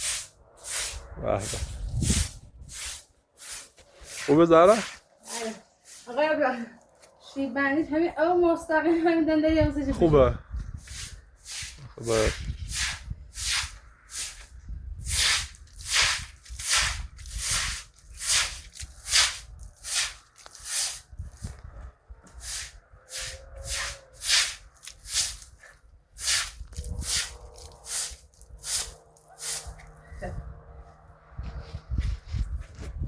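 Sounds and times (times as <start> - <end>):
scrubbing strokes on a surface: 0.0 - 6.4, 10.8 - 14.5, 15.1 - 21.1, 22.4 - 30.0.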